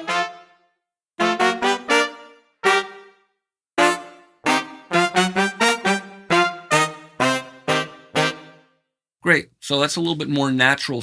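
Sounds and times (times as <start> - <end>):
horn section punched notes: 0.0 - 0.6, 1.2 - 8.7.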